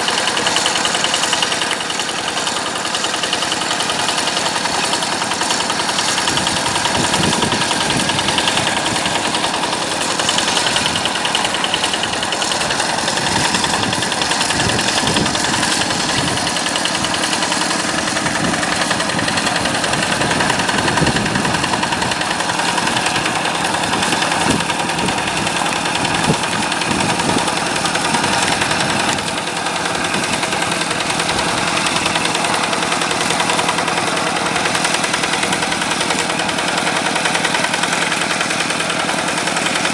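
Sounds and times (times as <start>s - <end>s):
tractor diesel engine chugging: 0.0s - 39.9s.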